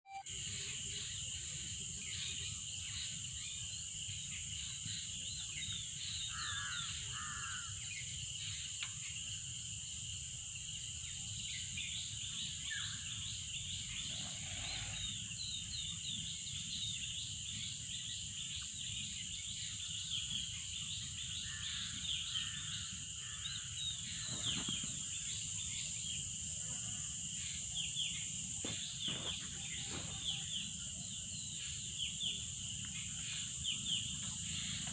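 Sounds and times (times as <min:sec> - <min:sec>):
birds chirping: 0:11.6 - 0:34.9.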